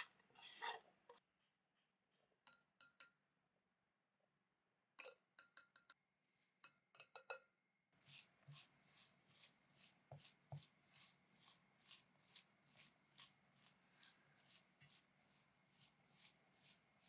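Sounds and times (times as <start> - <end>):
food squishing being mixed: 7.9 - 17.0.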